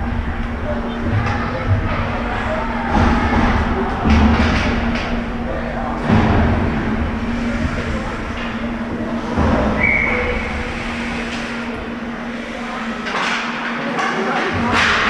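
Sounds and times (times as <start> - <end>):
rink and crowd noise: 0.0 - 15.0
steady low hum: 0.0 - 15.0
high whistle tone: 9.8 - 10.5.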